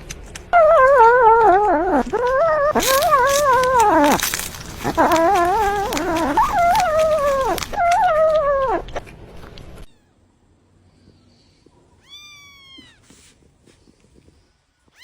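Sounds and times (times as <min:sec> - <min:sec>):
cat yowling: 0:00.6 - 0:09.0.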